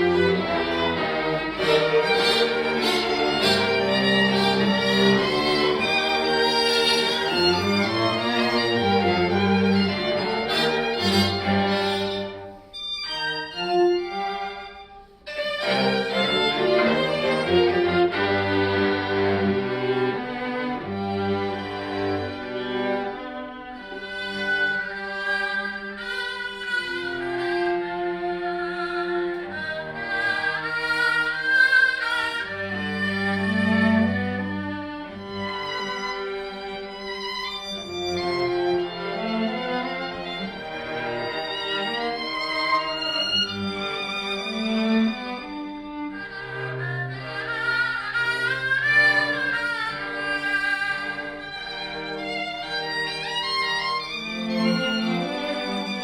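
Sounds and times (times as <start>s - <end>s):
bowed strings playing chamber music: 0.0s - 56.0s.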